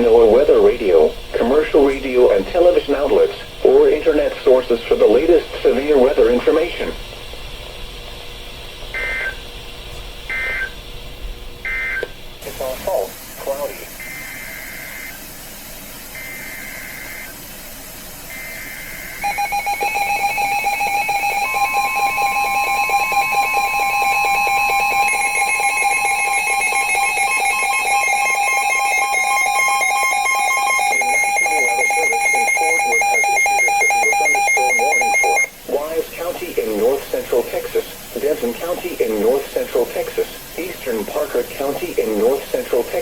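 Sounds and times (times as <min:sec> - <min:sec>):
pulsing alarm beeps: 0:08.9 - 0:09.4, 0:10.3 - 0:10.8, 0:11.6 - 0:12.1, 0:14.0 - 0:15.2, 0:16.1 - 0:17.4, 0:18.3 - 0:35.5
buzzing digital data bursts: 0:14.0 - 0:15.2, 0:16.1 - 0:17.4, 0:18.3 - 0:35.5
steady alert tone: 0:18.4 - 0:35.5.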